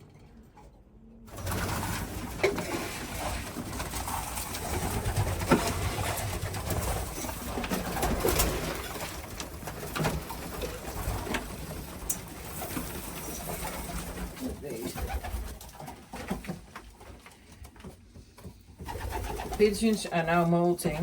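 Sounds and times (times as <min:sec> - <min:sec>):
clicks and knocks of birds moving: 0:00.0 - 0:21.0
pigeons cooing: 0:01.4 - 0:16.1, 0:18.8 - 0:20.0.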